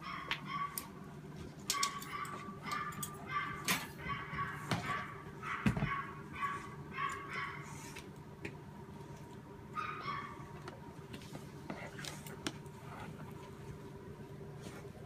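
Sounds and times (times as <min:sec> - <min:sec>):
dog barking: 0:00.0 - 0:00.8, 0:01.8 - 0:07.7, 0:09.8 - 0:10.4.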